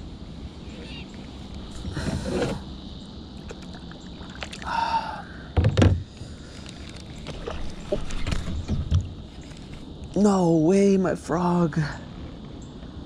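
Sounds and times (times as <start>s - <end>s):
fishing gear clicks and knocks: 5.6s - 9.9s.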